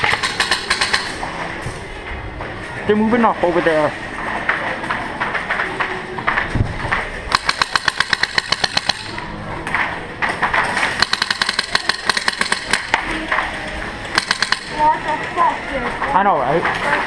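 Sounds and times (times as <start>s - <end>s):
airsoft gun automatic fire: 0.0s - 1.2s, 7.3s - 9.2s, 11.0s - 13.0s, 14.1s - 14.8s.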